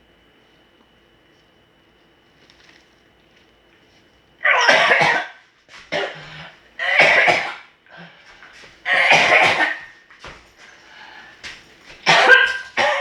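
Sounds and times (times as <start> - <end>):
harsh coughs: 4.5 - 7.7, 8.8 - 10.0, 12.0 - 13.0.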